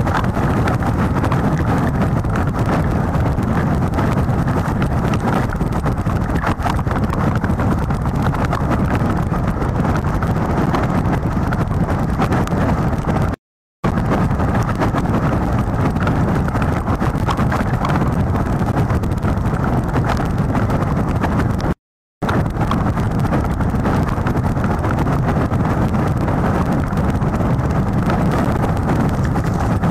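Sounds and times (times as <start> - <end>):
wind buffeting microphone: 0.0 - 29.9.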